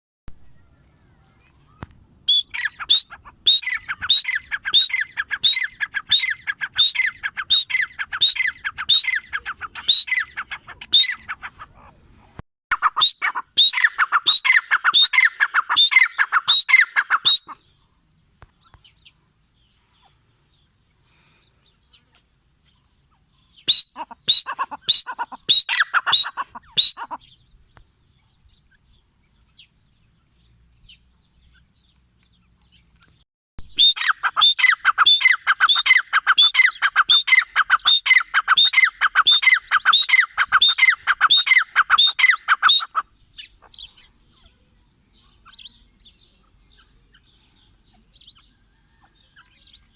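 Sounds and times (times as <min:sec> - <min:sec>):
francolin calling: 0:02.3 - 0:11.4, 0:12.7 - 0:17.8, 0:23.3 - 0:27.6, 0:33.6 - 0:49.9.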